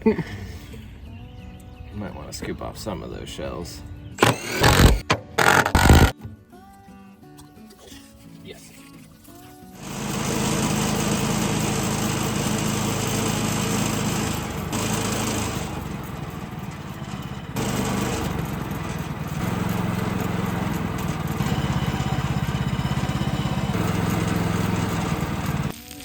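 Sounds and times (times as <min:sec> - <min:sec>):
small gasoline engine running: 0:04.2 - 0:06.1, 0:09.8 - 0:25.8.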